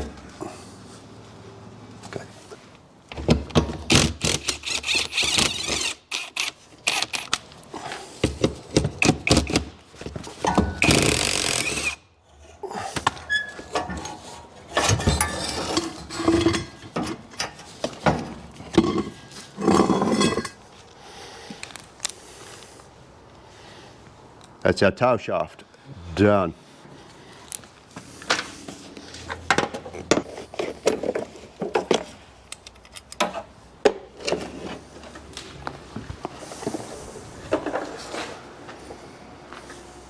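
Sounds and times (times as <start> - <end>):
metallic tool clicks and clanks: 4.2 - 7.4.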